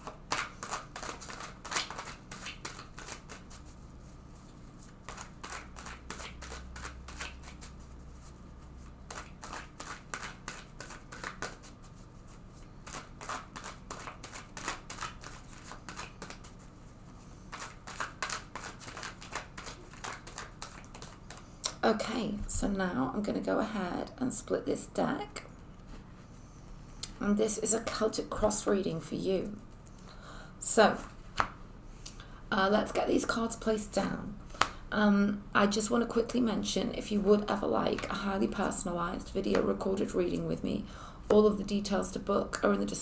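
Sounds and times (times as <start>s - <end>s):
cards being shuffled: 0.0s - 3.8s, 4.4s - 16.9s, 17.5s - 21.6s, 31.0s - 31.6s.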